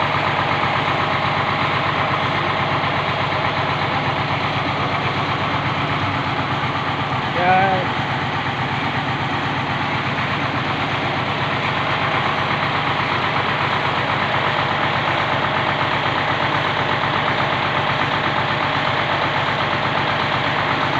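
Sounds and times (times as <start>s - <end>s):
engine idling with pulsing throb: 0.0s - 20.9s.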